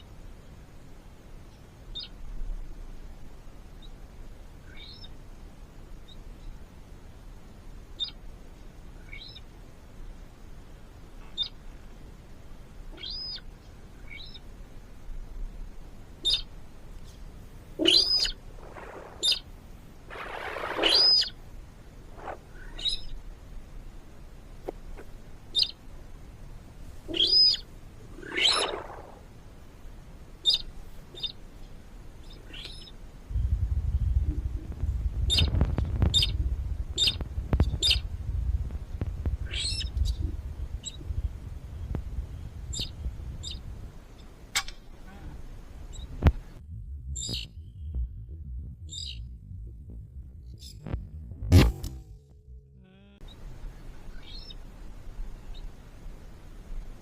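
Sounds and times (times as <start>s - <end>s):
birds chirping: 4.6s - 5.2s, 12.9s - 14.5s, 16.2s - 16.6s, 17.7s - 21.4s, 22.0s - 23.2s, 25.5s - 25.8s, 27.1s - 29.3s, 30.4s - 31.4s, 32.2s - 34.5s, 35.2s - 38.1s, 39.4s - 51.2s, 52.3s - 55.8s
low rumble: 17.8s - 24.1s, 33.1s - 56.9s.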